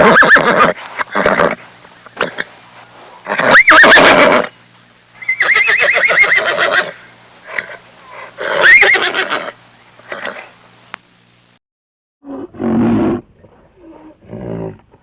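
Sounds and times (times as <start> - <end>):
horse whinnying: 0.0 - 1.6, 3.3 - 4.5, 5.2 - 7.8, 8.4 - 10.5.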